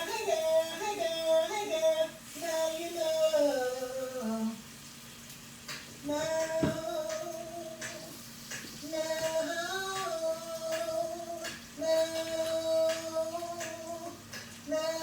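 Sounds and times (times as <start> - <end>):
woman singing soul song: 0.0 - 4.7, 6.0 - 15.0.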